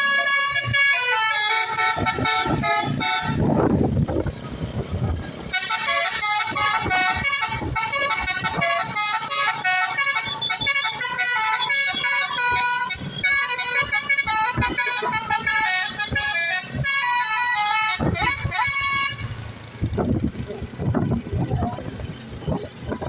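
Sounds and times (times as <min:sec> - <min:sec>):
multi-tone air horn melody: 0:00.0 - 0:03.8, 0:05.4 - 0:19.6.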